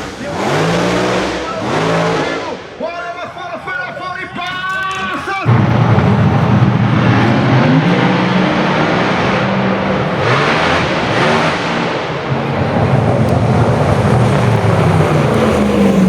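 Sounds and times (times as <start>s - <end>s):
race car engine at low revs: 0.0s - 3.2s, 5.4s - 16.0s
rush of noise: 4.1s - 16.0s.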